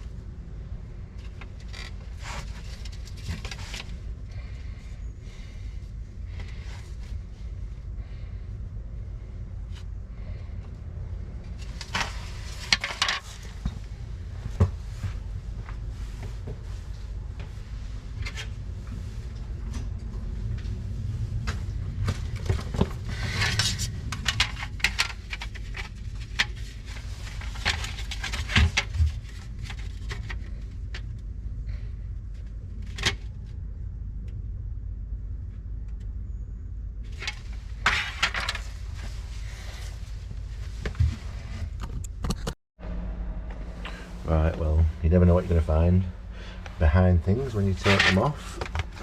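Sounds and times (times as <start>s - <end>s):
steady low hum: 0.0s - 49.0s.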